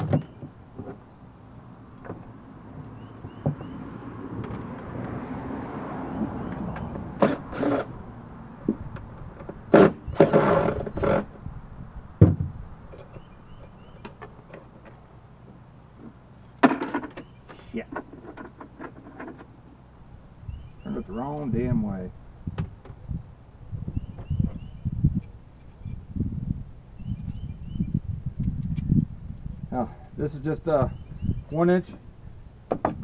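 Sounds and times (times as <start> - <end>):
tools and hardware clattering: 12.9 - 15.1, 16.0 - 19.5.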